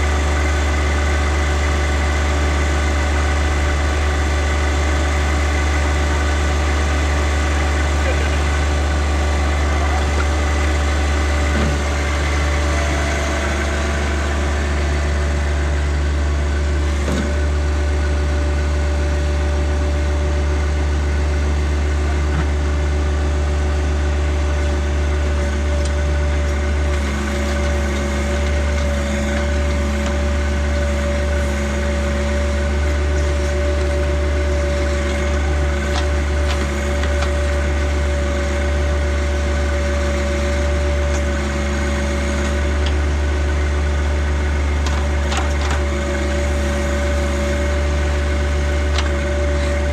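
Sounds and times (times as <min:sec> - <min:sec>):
tractor engine humming: 0:00.0 - 0:49.9
steady whine: 0:05.9 - 0:20.0.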